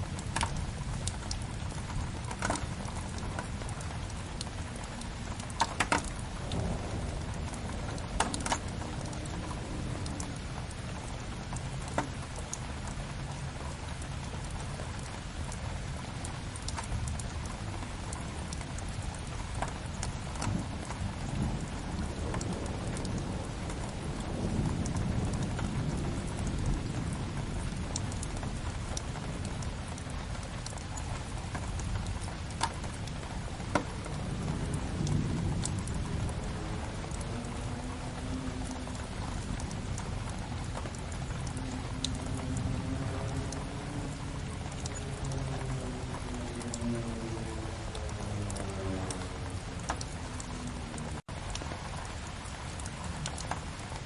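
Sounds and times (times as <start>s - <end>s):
wood fire crackling: 0.0s - 13.1s
rain against a window: 0.0s - 54.0s.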